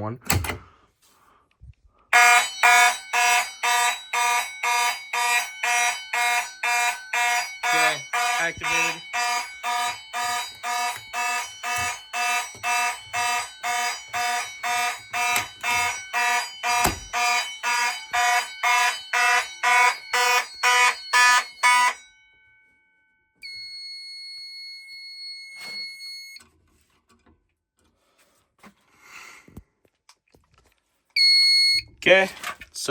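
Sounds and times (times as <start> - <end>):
pulsing fire alarm horn: 2.1 - 22.2, 23.4 - 26.4, 31.2 - 31.9
steady high electronic tone: 5.5 - 22.0.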